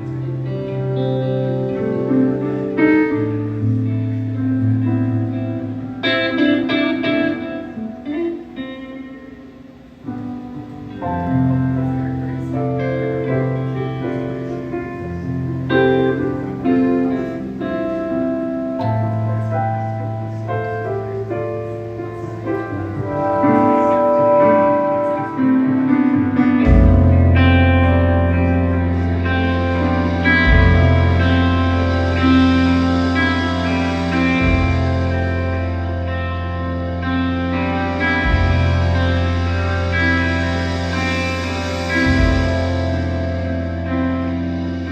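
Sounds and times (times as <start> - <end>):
live band music: 0.0 - 44.9
low bass line: 18.7 - 44.9.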